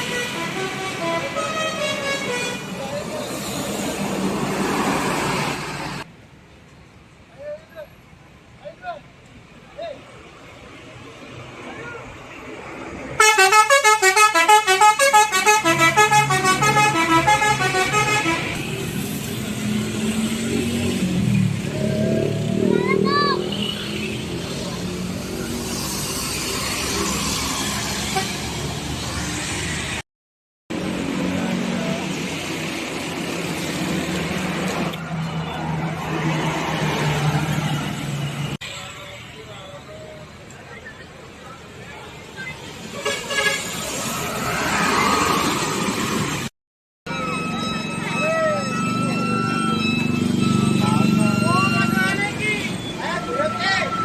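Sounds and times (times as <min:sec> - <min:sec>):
multi-tone musical horn: 0:00.0 - 0:02.6, 0:13.2 - 0:18.6
bus engine humming: 0:00.0 - 0:06.1, 0:10.4 - 0:30.0
traffic noise: 0:00.0 - 0:30.1, 0:30.7 - 0:54.0.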